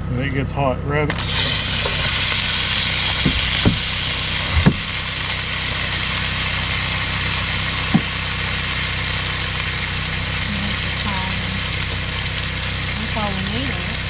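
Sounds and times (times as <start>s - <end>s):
engine running steadily: 1.0s - 14.0s
short thumps: 3.2s - 5.0s.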